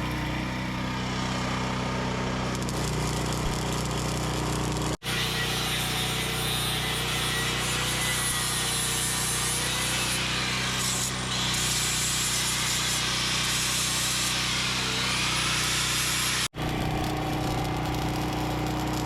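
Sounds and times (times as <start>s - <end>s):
harsh metalworking noise: 0.0s - 19.0s.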